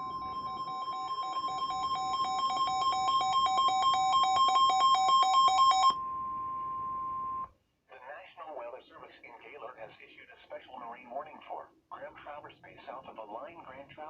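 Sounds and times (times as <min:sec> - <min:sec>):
electronic alarm beeping rapidly: 0:00.0 - 0:07.4
steady warning alarm tone: 0:00.0 - 0:07.5.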